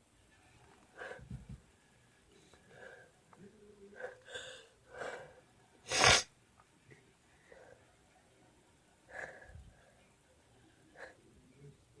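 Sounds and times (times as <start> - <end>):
person sneezing: 5.9 - 6.3.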